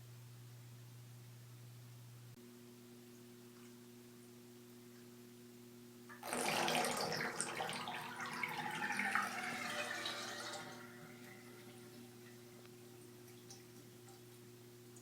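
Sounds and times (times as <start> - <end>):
tap running into bathtub: 6.1 - 12.4.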